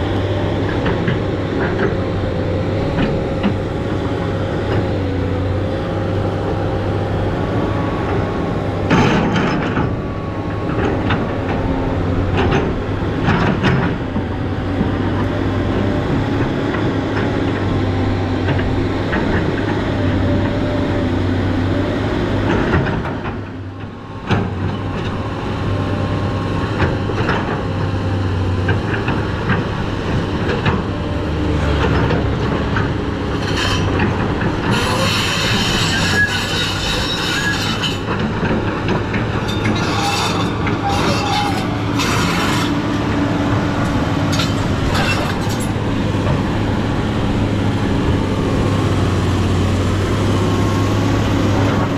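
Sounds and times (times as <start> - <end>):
excavator diesel engine running: 0.0 - 51.9
metal knocks and clanks: 33.4 - 43.2, 43.9 - 46.4.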